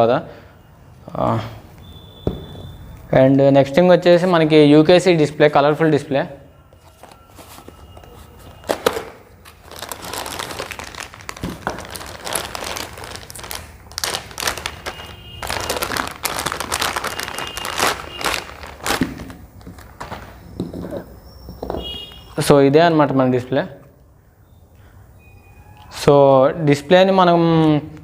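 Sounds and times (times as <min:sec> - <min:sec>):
packaging crinkling and rustling: 0:06.8 - 0:21.8.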